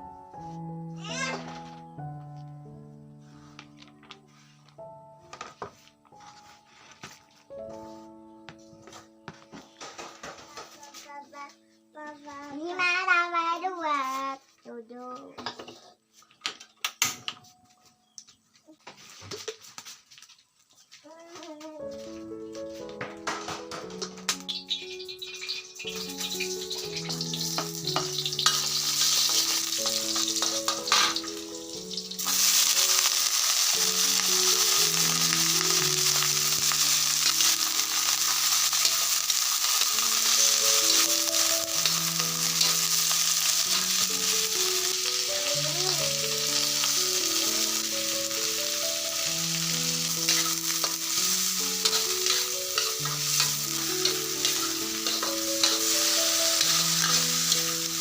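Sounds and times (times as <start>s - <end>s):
slow soft melody: 0.0s - 15.3s, 21.0s - 58.0s
food sizzling in hot oil: 24.0s - 58.0s.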